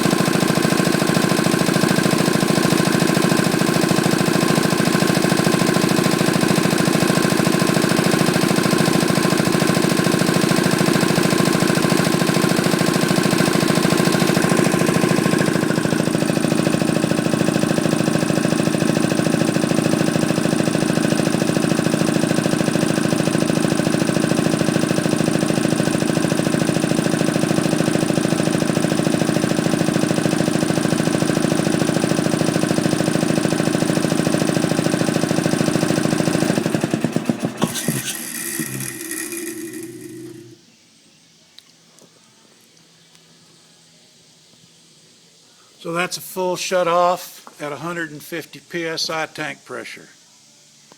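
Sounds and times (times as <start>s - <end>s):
air compressor pumping: 0.0s - 40.6s.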